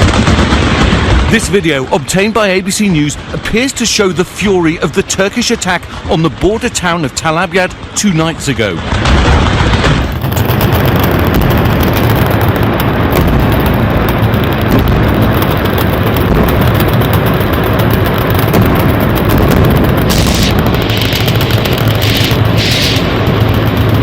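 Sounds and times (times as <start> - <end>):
gunfire: 0.0 - 2.0, 8.8 - 24.0
explosions: 0.0 - 3.7, 8.8 - 24.0
hissing flare: 8.9 - 24.0.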